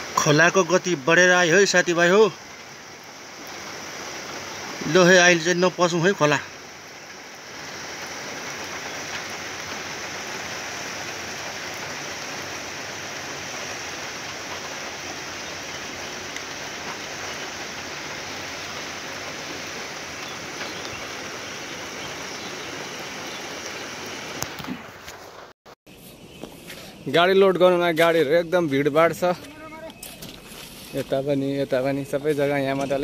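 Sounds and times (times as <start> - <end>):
river rushing: 0.0 - 25.0.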